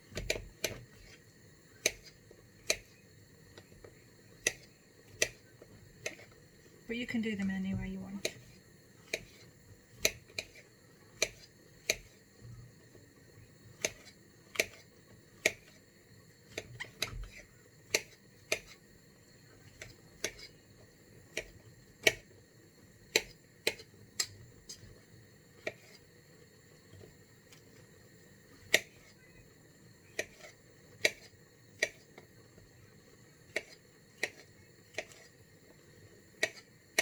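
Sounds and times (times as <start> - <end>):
knife chopping on board: 0.1 - 1.2, 1.8 - 3.0, 4.4 - 6.3, 7.8 - 12.2, 13.8 - 15.8, 16.5 - 18.8, 19.7 - 20.5, 21.3 - 22.2, 23.1 - 24.4, 25.6 - 26.0, 28.6 - 29.1, 30.2 - 32.3, 33.5 - 35.4, 36.4 - 37.0.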